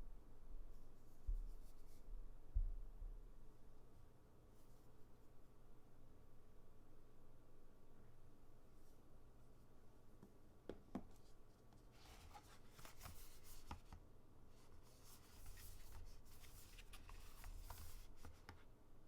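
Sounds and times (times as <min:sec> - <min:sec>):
rustling of phone packaging: 0:11.2 - 0:13.9, 0:14.6 - 0:18.5
light clicks of handling phone: 0:12.0 - 0:14.0.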